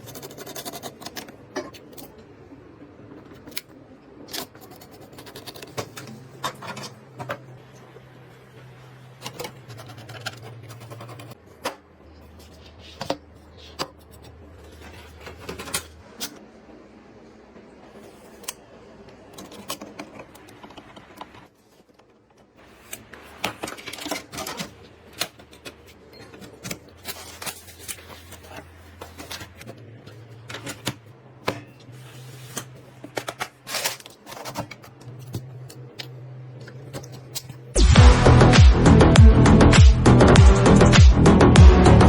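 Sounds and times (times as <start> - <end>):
computer parts clicking and clattering: 0.0 - 2.2, 3.2 - 7.6, 9.2 - 11.8, 12.4 - 16.4, 18.4 - 31.9.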